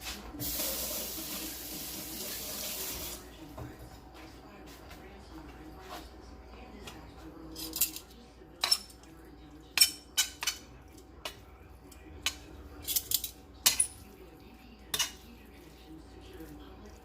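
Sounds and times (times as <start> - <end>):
metal utensil clinking on plate: 8.6 - 9.1, 9.8 - 14.1, 14.9 - 15.2.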